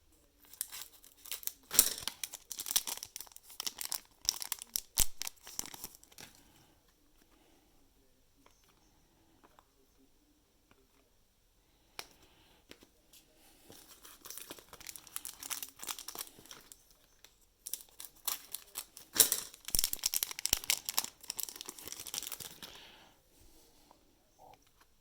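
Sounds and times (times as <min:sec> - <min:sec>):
plastic wrapper crinkling and tearing: 0:00.4 - 0:06.4, 0:13.7 - 0:17.0, 0:17.6 - 0:22.8.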